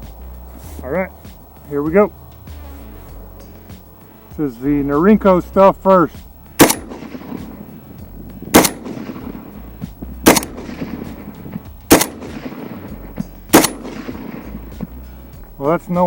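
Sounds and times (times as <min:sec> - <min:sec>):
rifle single shots with echo: 0:06.6 - 0:15.0.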